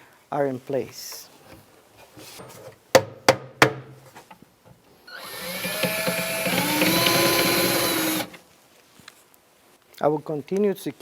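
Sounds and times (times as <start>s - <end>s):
power drill whining: 5.1s - 8.4s.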